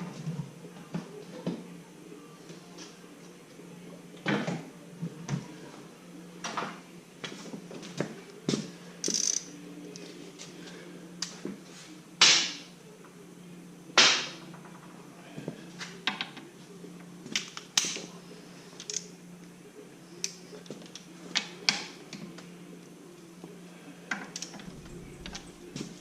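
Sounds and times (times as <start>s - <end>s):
steady low hum: 18.0s - 26.0s.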